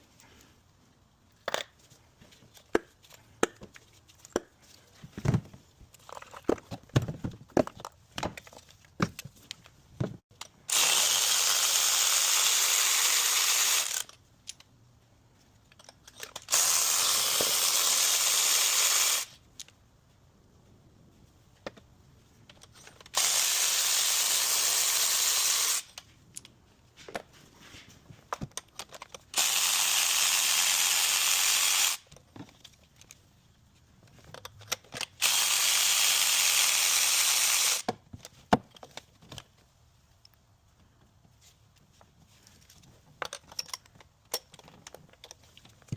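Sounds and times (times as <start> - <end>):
hand tools clicking and rattling: 28.3 - 29.4, 43.0 - 45.9.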